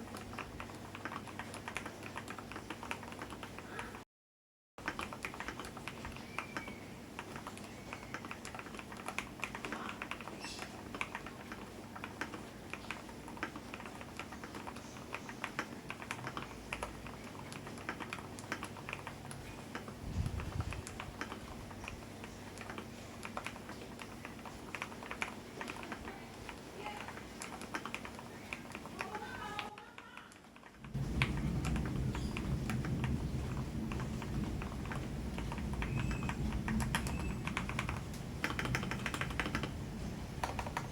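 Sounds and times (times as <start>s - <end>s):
mechanical keyboard key clacks: 31.6s - 39.8s.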